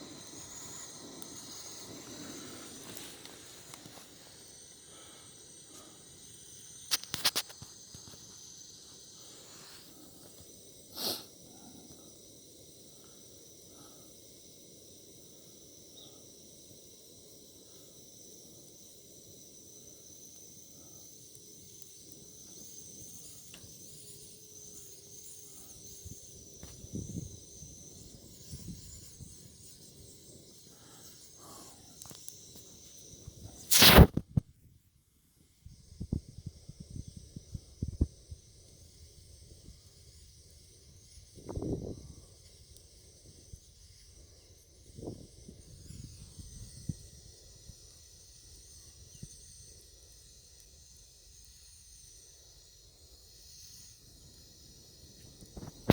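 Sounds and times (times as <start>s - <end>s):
bonfire hissing: 0.0s - 34.3s, 35.7s - 55.9s
fire crackling pops: 6.8s - 8.4s, 33.6s - 34.4s, 55.3s - 55.9s
fire popping: 33.6s - 34.4s.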